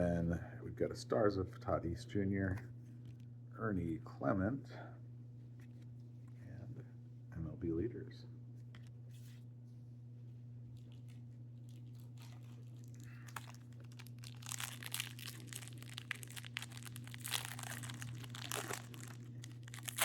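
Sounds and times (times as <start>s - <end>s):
plastic wrapper crinkling and tearing: 10.7s - 20.0s.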